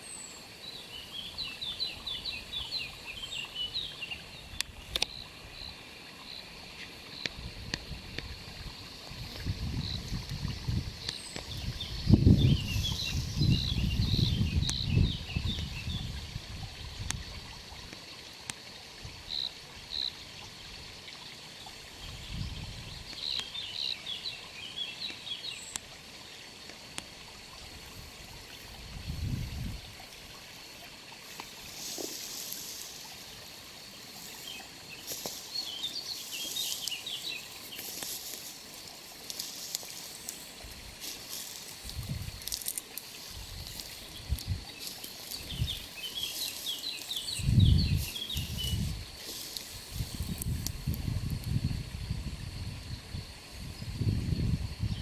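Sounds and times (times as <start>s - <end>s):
steady hiss: 0.0s - 55.0s
wind rumbling on microphone: 7.3s - 17.7s, 22.0s - 23.2s, 27.6s - 30.4s, 39.3s - 55.0s
small birds chirping: 11.0s - 16.1s, 30.6s - 50.6s.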